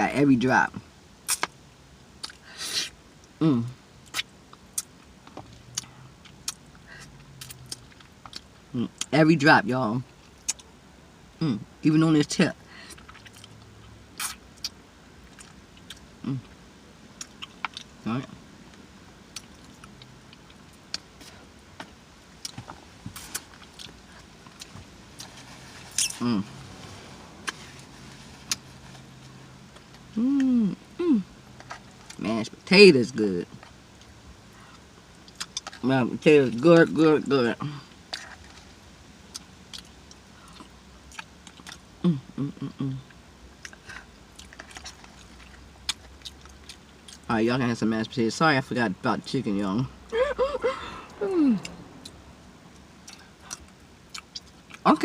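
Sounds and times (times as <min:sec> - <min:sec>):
wet mouth smacks eating: 0:01.3 - 0:01.5, 0:14.2 - 0:14.4
wet chewing and smacking: 0:04.0 - 0:06.7, 0:07.4 - 0:09.1, 0:12.9 - 0:16.1, 0:17.2 - 0:18.0, 0:18.7 - 0:26.2, 0:33.5 - 0:35.8, 0:39.3 - 0:41.9, 0:43.6 - 0:47.3, 0:51.6 - 0:54.9
closed-mouth hums: 0:16.1 - 0:16.6, 0:22.5 - 0:31.8, 0:41.9 - 0:44.1, 0:50.1 - 0:52.2.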